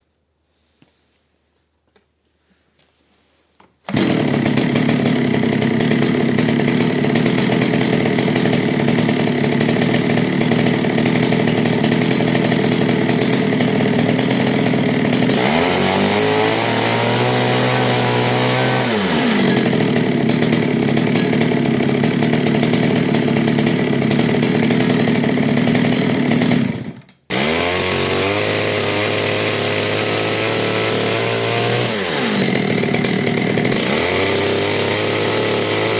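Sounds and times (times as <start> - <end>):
chainsaw revving: 3.9 - 35.9.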